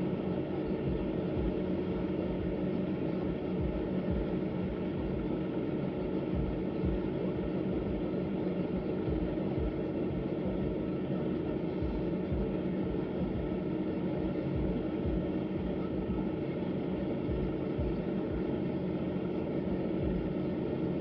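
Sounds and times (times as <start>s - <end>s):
car heater blower running: 0.0s - 21.0s.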